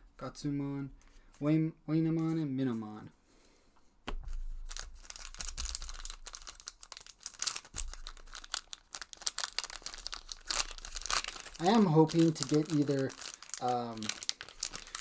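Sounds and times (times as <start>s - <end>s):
foil wrapper crinkling and tearing: 4.3s - 15.0s.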